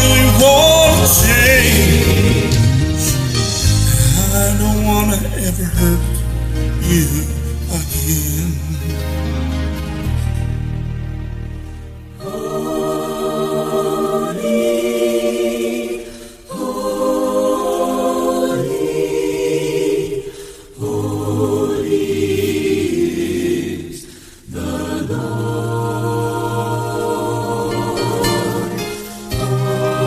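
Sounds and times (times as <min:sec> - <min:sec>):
wordless choir singing: 0:00.0 - 0:05.4, 0:12.2 - 0:30.0
backing-track music: 0:00.0 - 0:14.5, 0:24.6 - 0:30.0.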